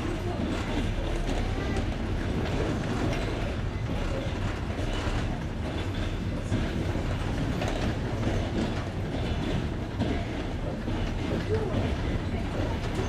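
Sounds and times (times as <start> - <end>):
train rumble: 0.0 - 13.0
train wheels clicking over rail joints: 0.0 - 13.0.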